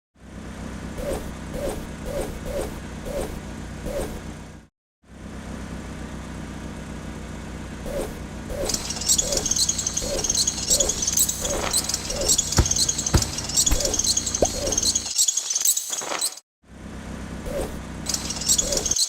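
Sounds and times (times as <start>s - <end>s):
cartoon engine hum: 0.6s - 4.6s, 7.8s - 15.1s
repeating chirp: 8.7s - 16.1s
sharp knock: 11.0s - 14.9s.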